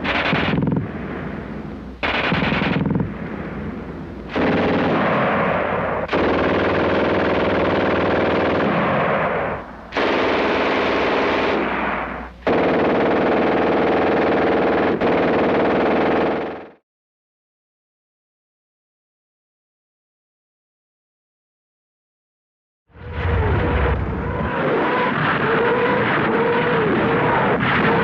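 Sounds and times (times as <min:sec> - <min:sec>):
automatic machine-gun fire: 0:00.0 - 0:00.8, 0:02.0 - 0:03.1, 0:04.3 - 0:16.8.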